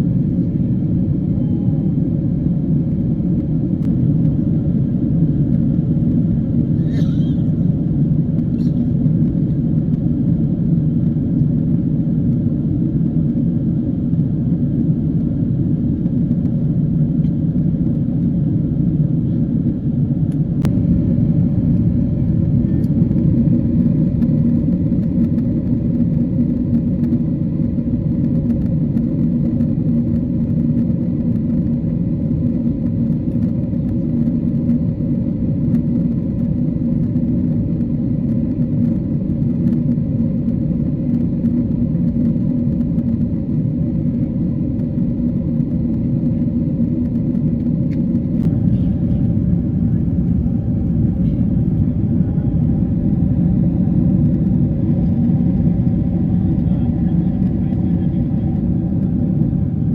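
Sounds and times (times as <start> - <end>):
airliner cabin engine rumble: 0.0 - 59.9.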